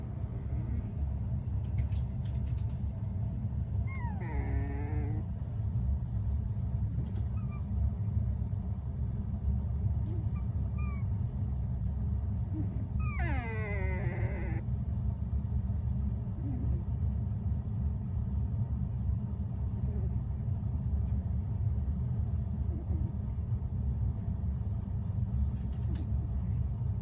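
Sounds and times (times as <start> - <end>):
steady low hum: 0.0 - 27.0
puppy whimpering: 3.8 - 5.4, 6.9 - 7.9, 9.9 - 11.4, 12.4 - 14.7, 16.3 - 17.0, 22.7 - 23.3.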